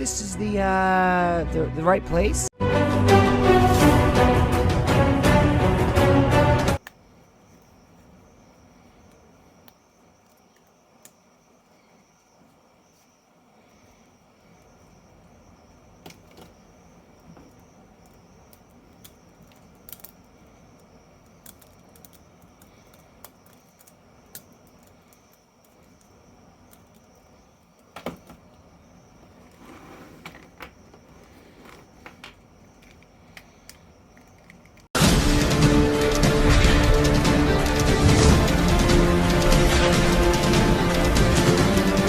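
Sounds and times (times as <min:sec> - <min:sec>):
faint room hiss: 0:06.8 - 0:34.9.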